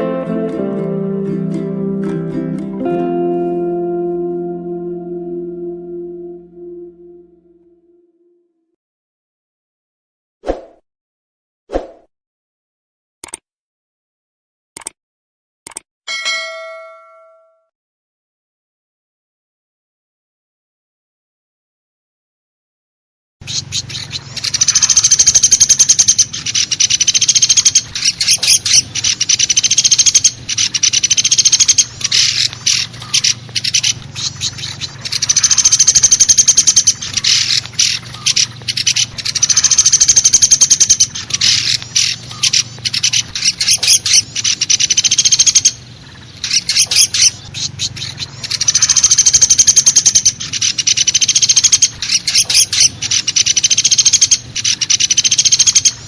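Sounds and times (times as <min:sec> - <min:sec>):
recorded woodpecker call trills: 0:23.4 - 0:56.0.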